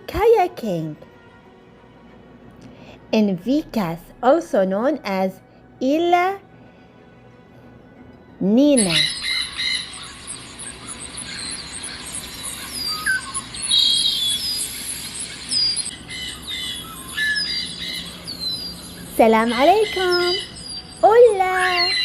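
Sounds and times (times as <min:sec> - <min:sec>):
birds chirping and calling: 0:08.8 - 0:22.0
steady background hiss: 0:08.8 - 0:22.0.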